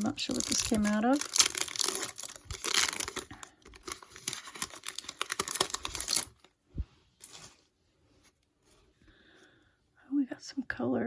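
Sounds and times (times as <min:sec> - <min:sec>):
wrapper tearing and crinkling: 0:00.0 - 0:06.5.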